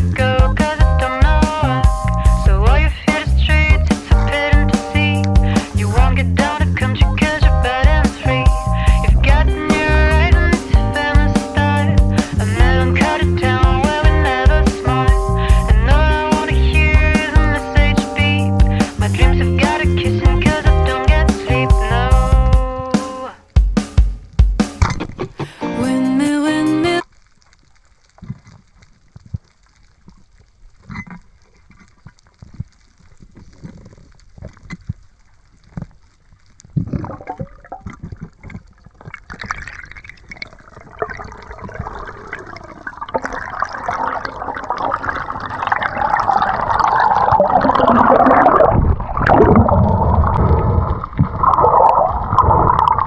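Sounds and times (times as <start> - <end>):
water sloshing and gurgling: 27.2 - 53.0.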